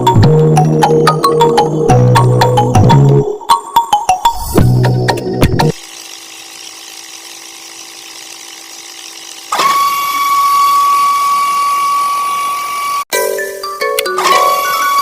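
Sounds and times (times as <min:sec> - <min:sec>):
small electric motor whining: 0:05.7 - 0:13.0.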